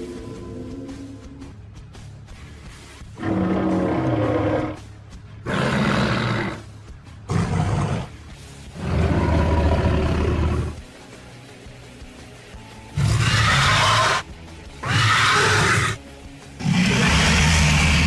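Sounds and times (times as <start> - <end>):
monster roars: 3.2 - 4.8, 13.0 - 14.2, 14.8 - 16.0, 16.6 - 18.0.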